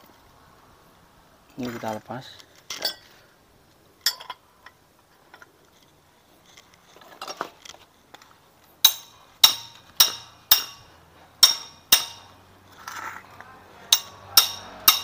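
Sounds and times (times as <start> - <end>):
faint metal clinks: 2.7 - 3.1
hammer striking metal: 8.8 - 12.4, 13.9 - 15.0.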